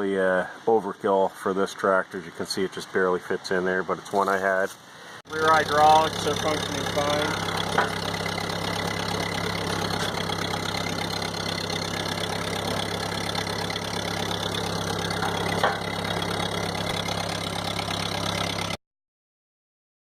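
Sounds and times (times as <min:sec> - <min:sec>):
tractor engine idling: 0:05.2 - 0:18.8.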